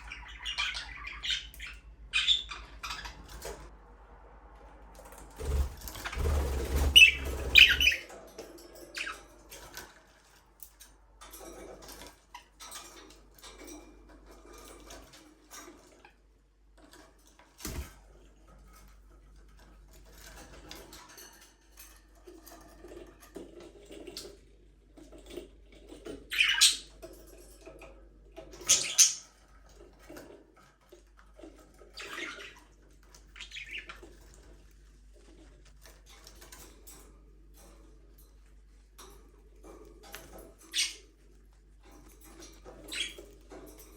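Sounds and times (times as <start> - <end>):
budgerigars chirping: 0.0 - 3.3, 5.4 - 8.0, 26.3 - 26.9, 28.7 - 29.3, 33.4 - 34.0, 40.7 - 41.1, 42.8 - 43.3.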